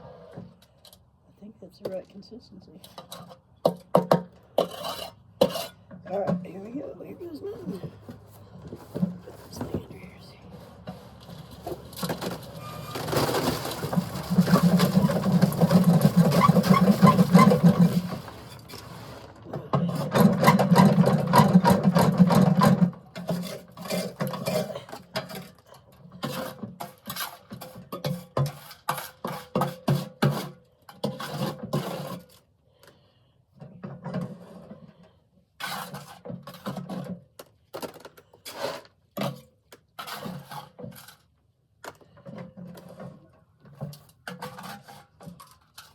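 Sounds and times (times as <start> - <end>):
wet concrete pouring from mixer: 11.1 - 24.6.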